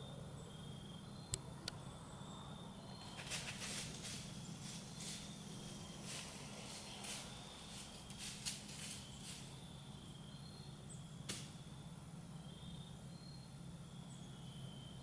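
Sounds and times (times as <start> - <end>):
rustling in dry leaves: 3.0 - 9.8.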